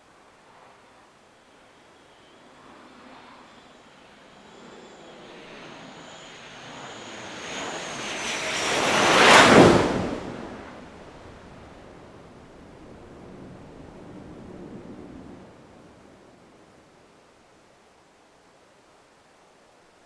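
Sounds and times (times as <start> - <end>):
jet aircraft flying past: 0.4 - 16.4.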